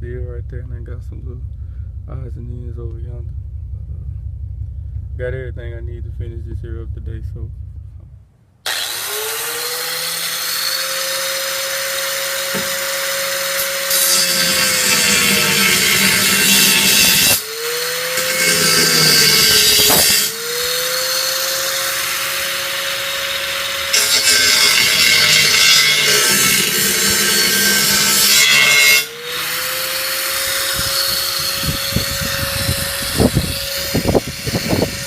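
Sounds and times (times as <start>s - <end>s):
grinding steel hiss: 8.7s - 35.0s
power tool whining: 8.7s - 35.0s.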